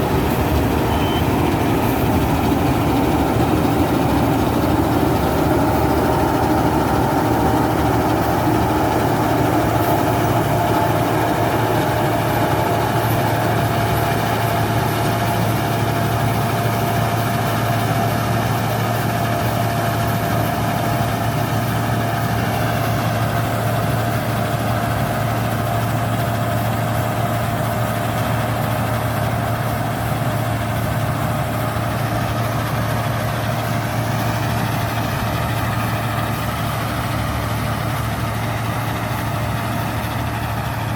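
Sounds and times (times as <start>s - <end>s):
high whine: 0.0s - 16.8s
combine harvester engine running: 0.0s - 40.9s.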